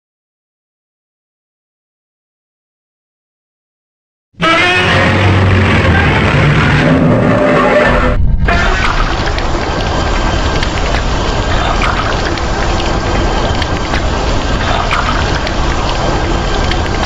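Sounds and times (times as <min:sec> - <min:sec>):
heavy rain: 0:04.4 - 0:17.0.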